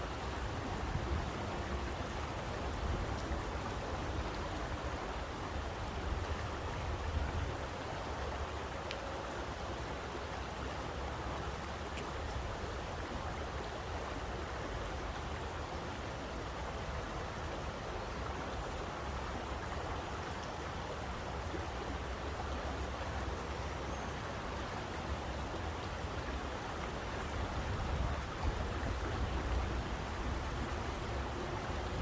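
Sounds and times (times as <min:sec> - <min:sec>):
water rushing: 0:00.0 - 0:32.0.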